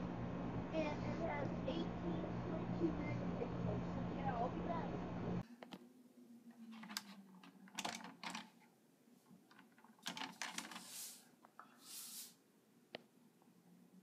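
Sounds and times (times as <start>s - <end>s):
rustling: 6.5s - 12.4s
soft hissing whooshes: 10.8s - 12.4s.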